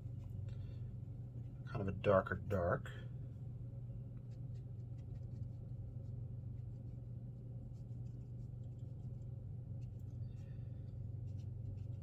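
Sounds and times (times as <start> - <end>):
steady low hum: 0.0 - 12.0
paintbrush scratching on paper: 4.3 - 10.2, 10.9 - 12.0.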